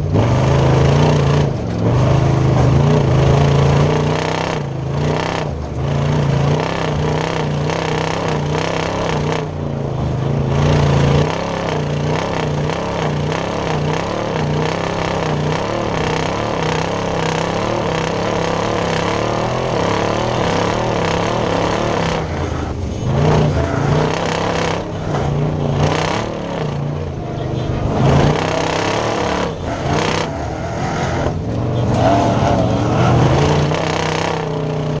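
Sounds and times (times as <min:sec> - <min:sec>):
truck engine running hard: 0:00.0 - 0:35.0.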